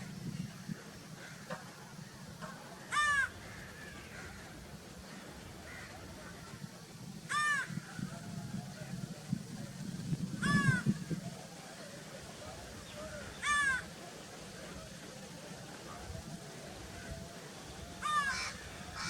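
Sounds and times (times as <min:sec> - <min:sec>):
crow cawing: 0:02.9 - 0:04.4, 0:05.7 - 0:05.9, 0:07.3 - 0:07.8, 0:10.4 - 0:10.9, 0:13.2 - 0:13.9, 0:18.0 - 0:19.0.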